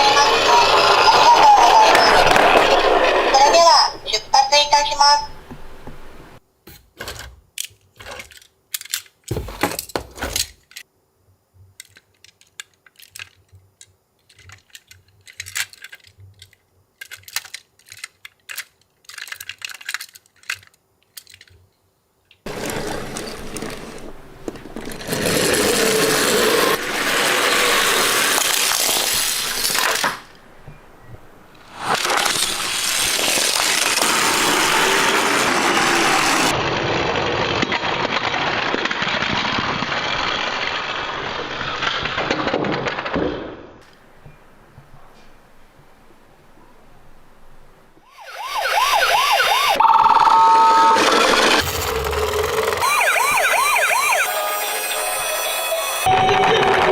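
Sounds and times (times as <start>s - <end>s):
loud steady noise: 0.0s - 4.1s, 31.7s - 36.6s
toy cars clicking together: 7.0s - 10.9s, 11.7s - 21.6s, 22.4s - 30.4s, 31.7s - 36.6s.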